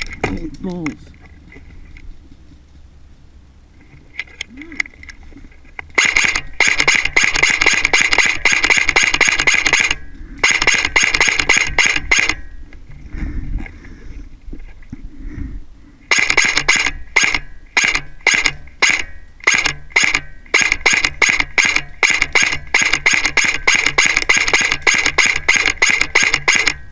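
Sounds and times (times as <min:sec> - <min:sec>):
rapid mechanical clicking: 0:05.9 - 0:12.4, 0:16.1 - 0:26.9.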